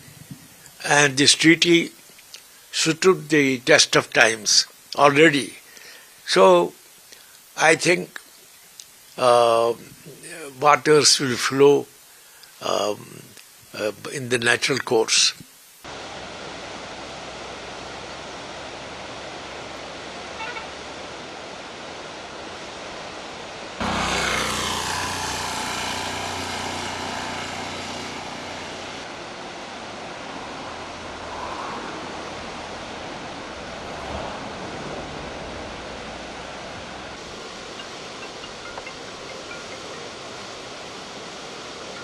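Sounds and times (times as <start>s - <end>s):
steady rushing noise: 20.9s - 42.0s
low hum: 23.8s - 29.5s.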